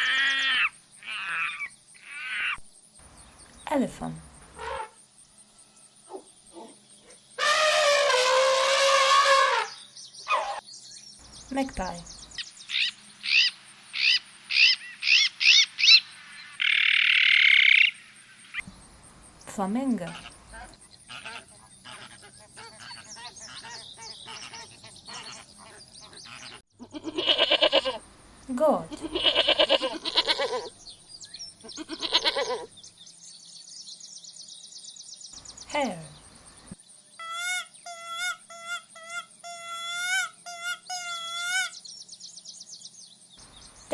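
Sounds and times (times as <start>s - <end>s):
elephant trumpeting: 4.6s - 5.0s, 7.4s - 10.6s
goat bleating: 26.8s - 28.0s, 28.8s - 30.7s, 31.7s - 32.7s.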